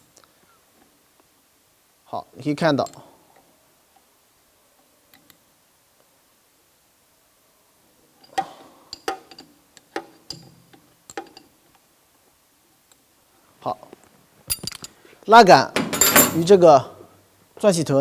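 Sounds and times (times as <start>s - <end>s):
wrenches clicking on metal: 15.8s - 16.6s.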